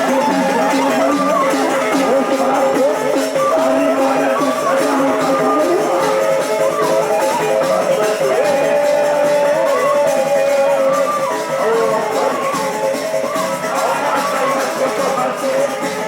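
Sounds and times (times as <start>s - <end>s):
shaken percussion: 0.0s - 16.0s.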